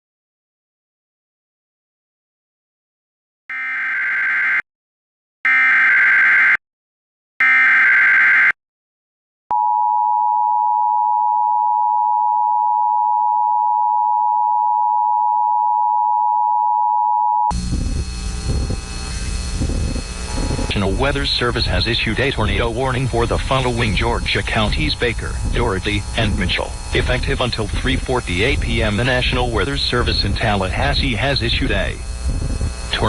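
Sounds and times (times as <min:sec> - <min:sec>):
dense broadcast noise: 0:17.5 - 0:33.0.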